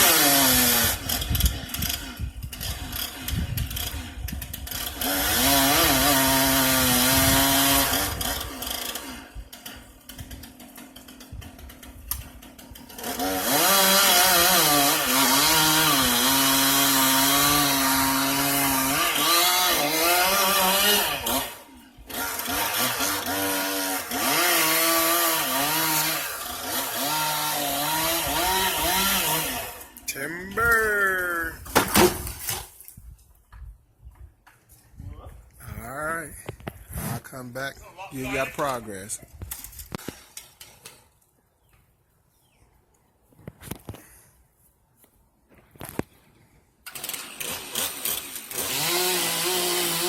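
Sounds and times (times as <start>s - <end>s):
chainsaw cutting tree: 0.0s - 30.1s, 46.8s - 50.0s.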